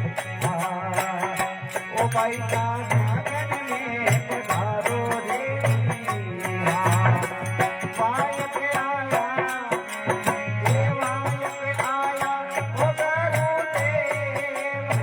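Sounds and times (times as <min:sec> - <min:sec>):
steady drum beat: 0:00.0 - 0:15.0.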